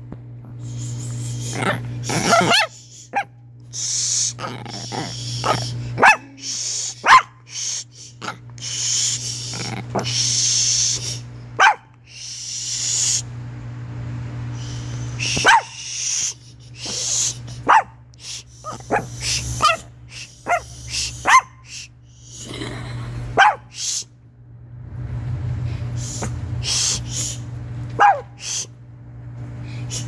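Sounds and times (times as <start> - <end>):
small dog yipping and barking: 1.6 - 3.4, 5.4 - 6.4, 7.0 - 7.4, 11.6 - 11.9, 15.3 - 15.8, 17.6 - 18.0, 18.6 - 21.7, 23.4 - 23.8, 28.0 - 28.7
dog huffing: 14.8 - 24.0.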